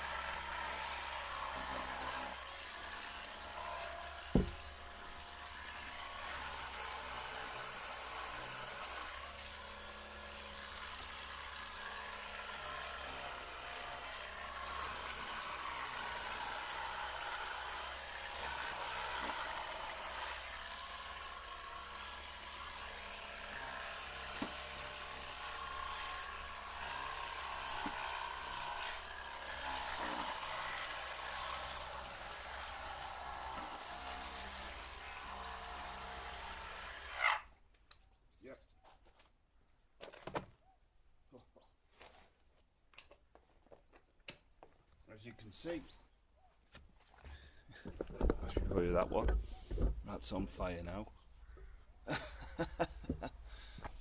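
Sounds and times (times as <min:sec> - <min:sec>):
orbital sander on wood: 0:00.0 - 0:37.5.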